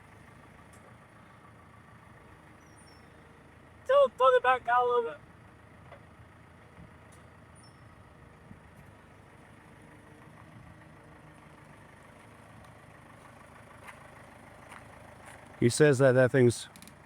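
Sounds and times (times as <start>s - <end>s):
faint engine idling: 0.0s - 17.0s
light ticks: 12.6s - 12.8s.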